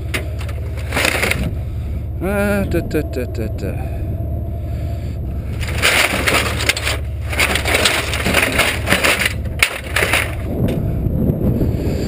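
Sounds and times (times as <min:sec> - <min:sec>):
crunching and scraping: 0:00.0 - 0:11.0
low engine rumble: 0:00.0 - 0:12.0.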